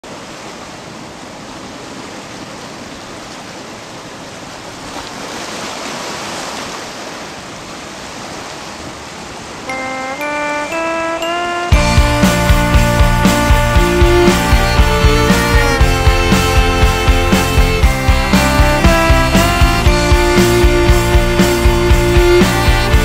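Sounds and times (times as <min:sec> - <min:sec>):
ocean surf washing: 0:00.0 - 0:23.0
music with stepping notes: 0:09.7 - 0:23.0.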